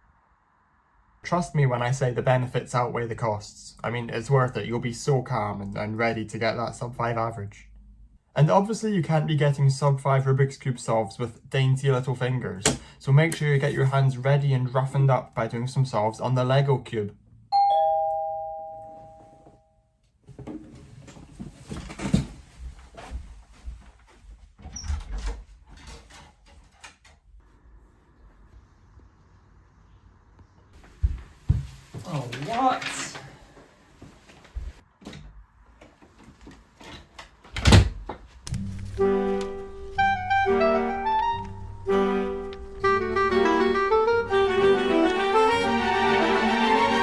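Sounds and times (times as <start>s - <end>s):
two-note doorbell chime: 17.5s - 19.9s
music with held notes and bass: 38.5s - 47.0s.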